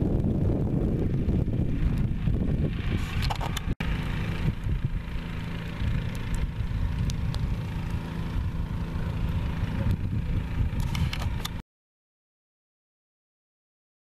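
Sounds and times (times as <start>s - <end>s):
wind rumble on microphone: 0.0s - 11.6s
small fire crackling: 4.4s - 10.1s.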